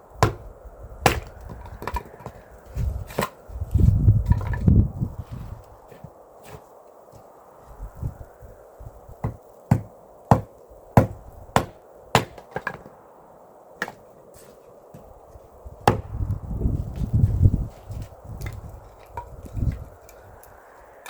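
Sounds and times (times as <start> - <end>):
blade chopping wood: 0.2 - 0.5, 1.1 - 2.4, 3.1 - 3.4, 9.2 - 12.9, 15.9 - 16.2.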